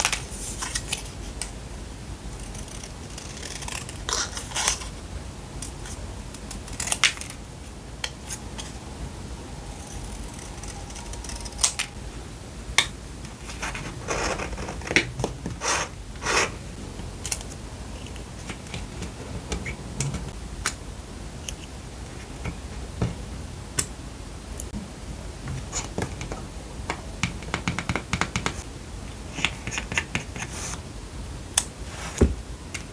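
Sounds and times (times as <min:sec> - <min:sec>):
paper rustling: 0:31.8 - 0:32.4.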